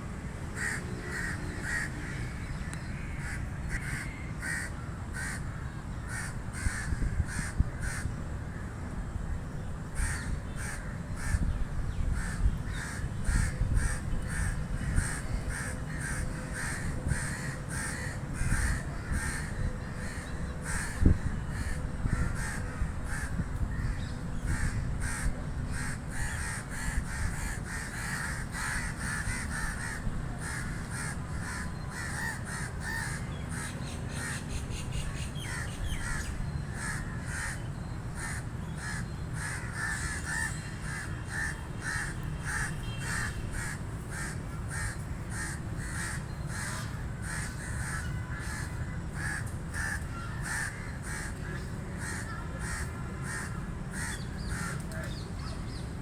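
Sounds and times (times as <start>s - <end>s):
crows cawing: 0.6s - 2.3s, 3.0s - 8.8s, 10.0s - 55.1s.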